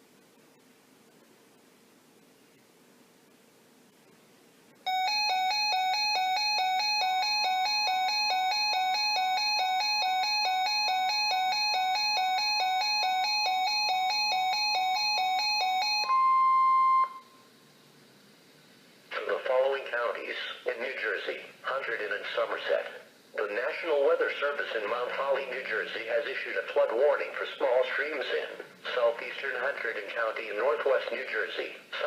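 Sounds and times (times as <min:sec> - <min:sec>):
steady alarm tone: 0:04.8 - 0:17.5
chime-like emergency alert beeps: 0:04.9 - 0:17.4.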